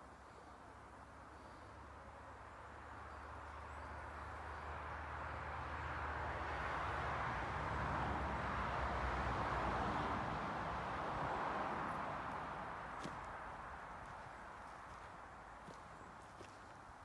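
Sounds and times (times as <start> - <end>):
tyre noise: 12.2 - 17.0.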